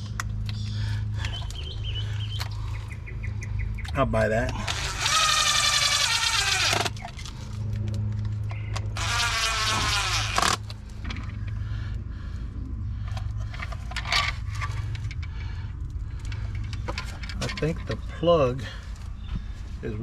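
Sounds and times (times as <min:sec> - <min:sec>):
steady low hum: 0:00.0 - 0:20.0
fly buzzing: 0:04.6 - 0:07.1, 0:09.0 - 0:10.6.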